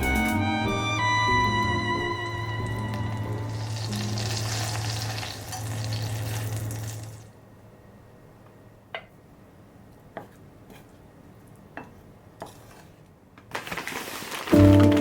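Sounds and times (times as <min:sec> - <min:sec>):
food sizzling in a frying pan: 0:03.5 - 0:07.3.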